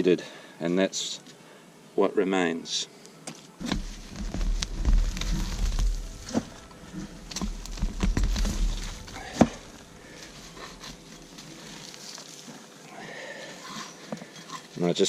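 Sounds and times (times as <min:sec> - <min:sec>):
soil pattering onto ground: 0:03.6 - 0:15.0.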